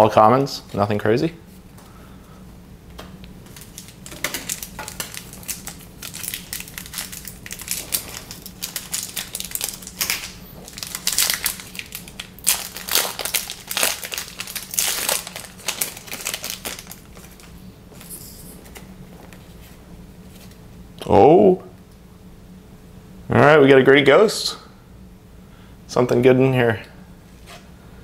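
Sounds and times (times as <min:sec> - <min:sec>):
plastic wrapper crinkling: 0:03.4 - 0:17.6.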